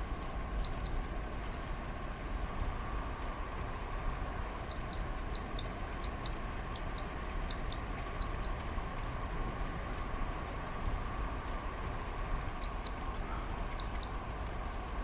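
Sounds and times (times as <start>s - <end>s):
small bird high sharp calls: 4.7s - 8.6s, 12.6s - 14.2s.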